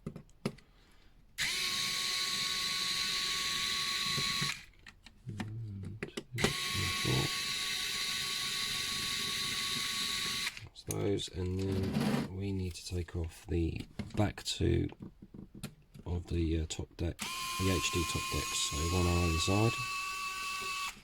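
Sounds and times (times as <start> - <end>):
electric screwdriver running: 1.4 - 4.7, 6.4 - 10.6, 17.2 - 21.0.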